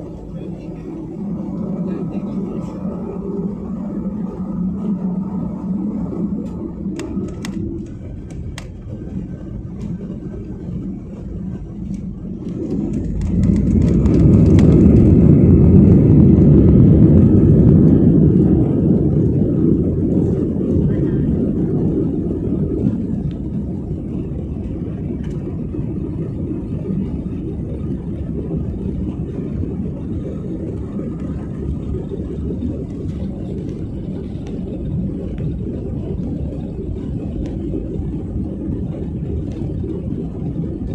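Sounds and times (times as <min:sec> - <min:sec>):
jet engines rumbling: 0:00.0 - 0:40.9.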